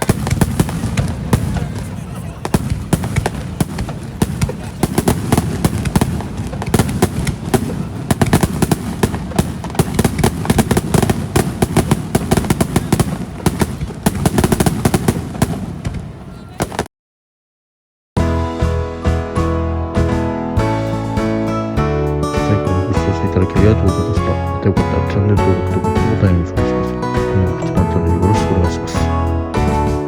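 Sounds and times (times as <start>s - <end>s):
fireworks crackling pops: 0.0s - 16.9s.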